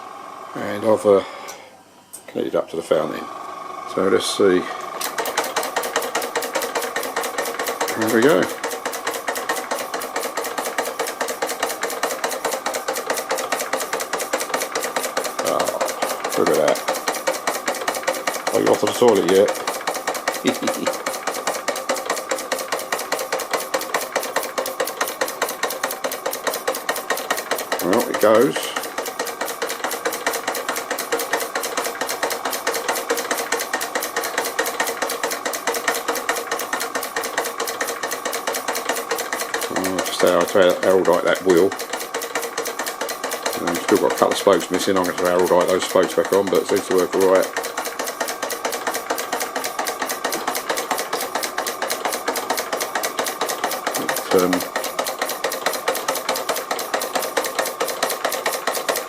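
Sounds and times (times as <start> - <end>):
steady hum: 0.0 - 31.4
toy steam engine exhaust beating: 4.0 - 59.0.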